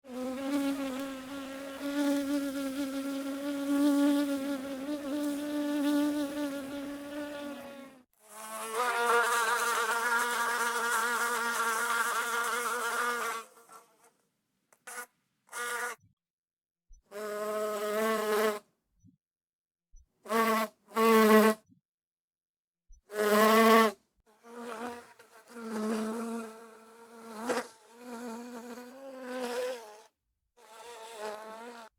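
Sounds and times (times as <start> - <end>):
bee buzzing in flight: 0.1 - 13.7.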